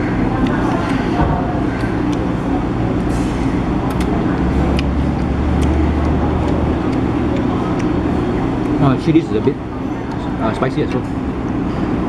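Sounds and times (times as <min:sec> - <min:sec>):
vehicle engine rumbling: 0:00.0 - 0:12.0.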